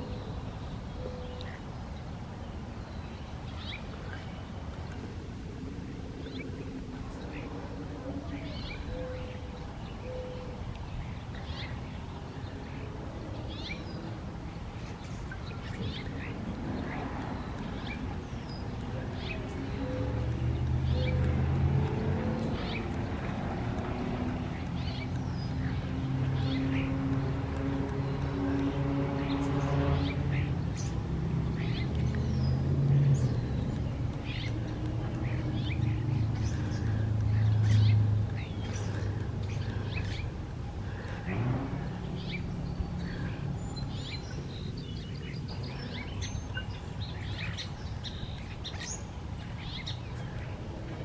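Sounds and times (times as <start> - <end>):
birds squabbling and calling: 6.2 - 14.2, 14.8 - 51.0
birds squabbling calls: 33.2 - 41.3, 42.1 - 51.0.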